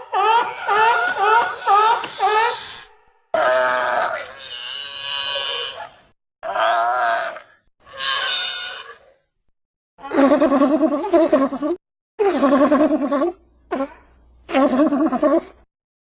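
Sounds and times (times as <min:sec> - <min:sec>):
seal calls: 0:00.0 - 0:06.0.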